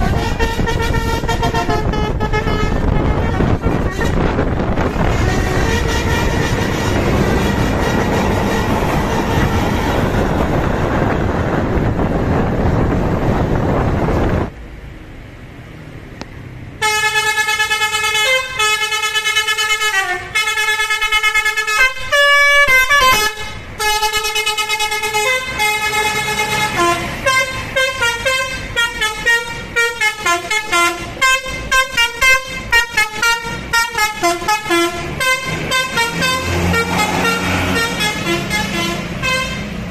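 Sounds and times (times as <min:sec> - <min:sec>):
bus horn playing a tune: 0:00.0 - 0:10.4, 0:16.8 - 0:39.9
loud steady rushing noise: 0:00.0 - 0:16.7.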